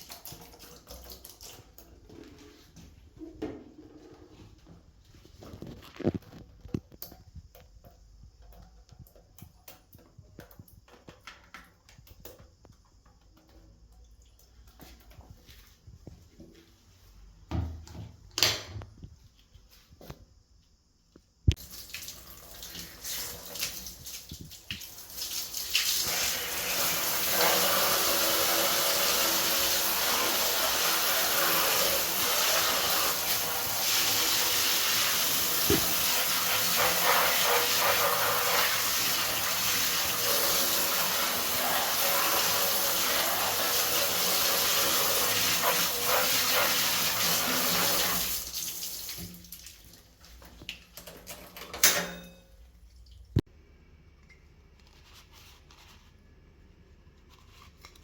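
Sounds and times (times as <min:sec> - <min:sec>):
water running: 0:00.0 - 0:06.4, 0:21.5 - 0:53.5.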